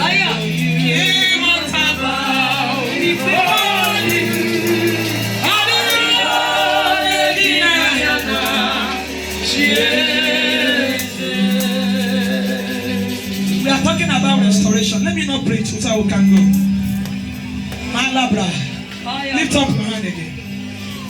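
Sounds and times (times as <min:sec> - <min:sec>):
gospel singing with accompaniment: 0:00.0 - 0:21.0
sustained low bass notes: 0:11.2 - 0:20.8.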